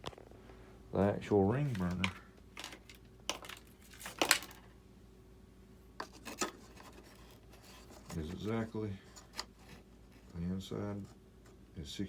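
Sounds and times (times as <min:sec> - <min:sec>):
handling rustles and clicks: 0:01.6 - 0:04.8, 0:06.0 - 0:11.6.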